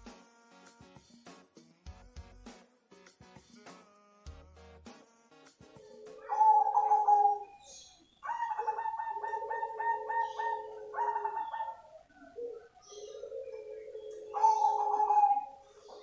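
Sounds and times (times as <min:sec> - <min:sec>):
dove cooing: 0:05.9 - 0:07.7, 0:08.3 - 0:16.0.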